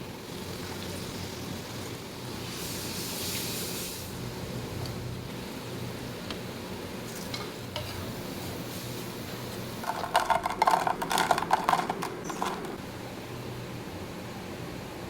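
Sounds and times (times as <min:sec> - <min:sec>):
food frying in hot oil: 0:00.0 - 0:06.2.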